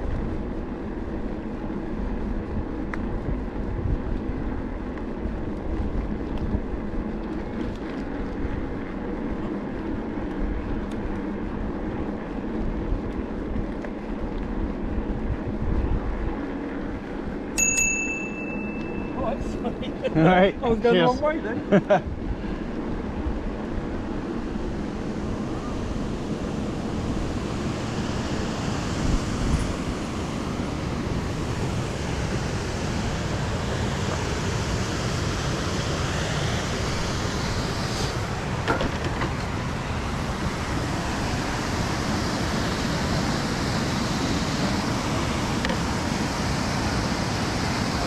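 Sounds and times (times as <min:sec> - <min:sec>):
wind buffeting microphone: 0:00.0 - 0:17.6, 0:19.0 - 0:48.0.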